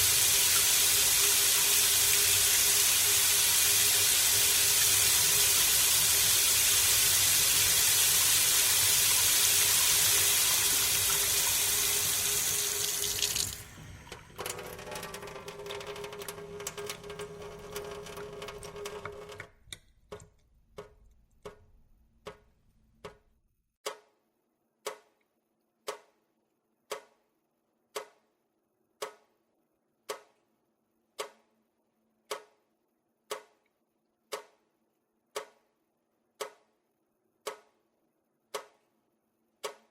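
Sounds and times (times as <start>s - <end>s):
rushing water: 0.0s - 13.7s.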